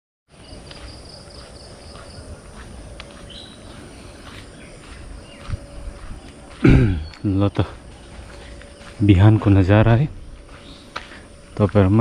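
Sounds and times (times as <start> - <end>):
insects droning: 0.3 - 12.0
bird chirps: 0.4 - 9.2, 10.5 - 11.7.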